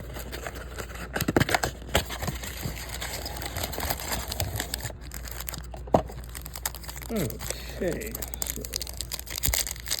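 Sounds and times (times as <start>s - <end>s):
wrappers crinkling and rustling: 2.1s - 10.0s.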